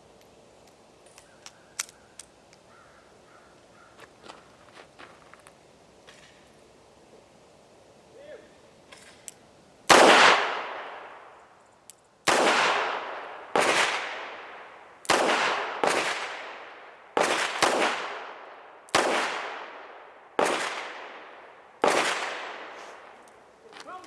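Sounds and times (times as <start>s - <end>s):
revolver gunshots: 9.9s - 11.3s, 12.3s - 23.2s.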